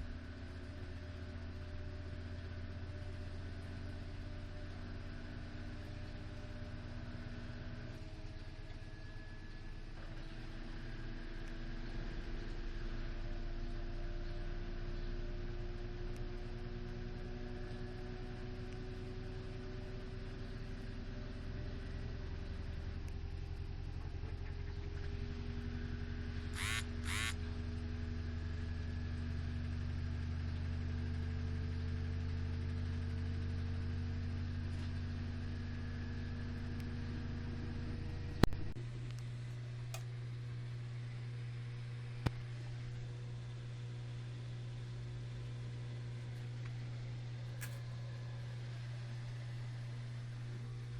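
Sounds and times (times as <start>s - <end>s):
washing machine motor hum: 0.0s - 27.6s, 29.7s - 50.9s
sharp click: 47.6s - 47.9s.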